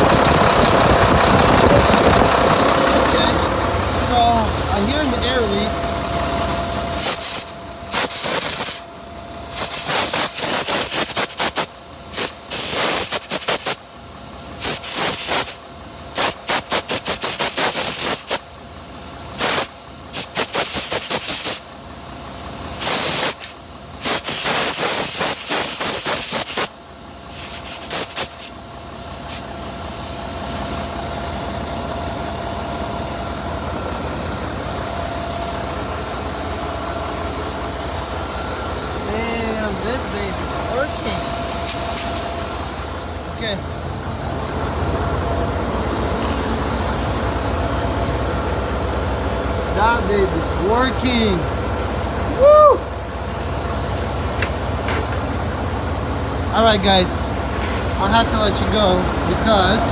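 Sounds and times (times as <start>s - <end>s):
diesel truck engine running: 0.0s - 9.6s, 28.6s - 59.9s
compressed air hissing: 2.7s - 48.3s, 53.6s - 59.9s.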